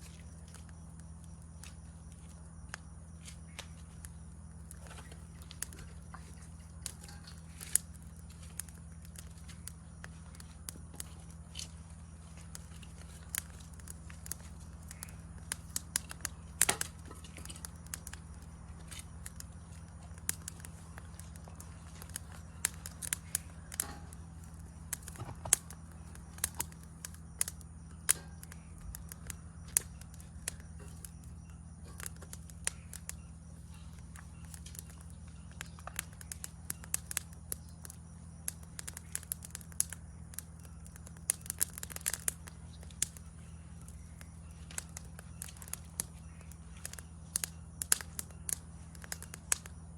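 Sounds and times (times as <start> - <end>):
burning wood popping: 0.0 - 49.9
campfire crackling: 0.0 - 49.9.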